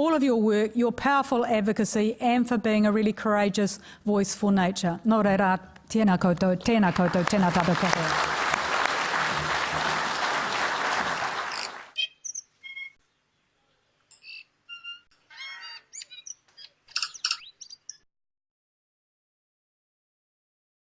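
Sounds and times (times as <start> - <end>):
audience applause: 6.9 - 12.0
bird singing: 11.6 - 13.3, 14.1 - 18.1.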